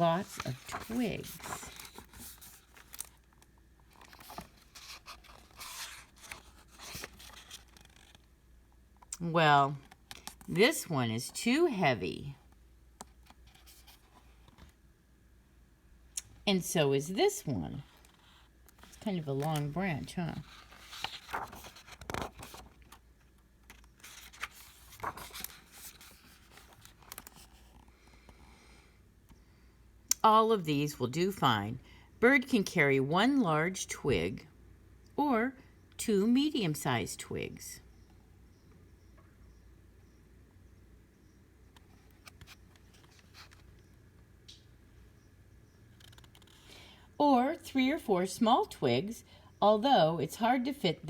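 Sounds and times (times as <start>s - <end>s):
paper pages rustling: 0.0s - 8.2s, 18.0s - 27.9s, 42.1s - 43.8s, 46.0s - 46.7s.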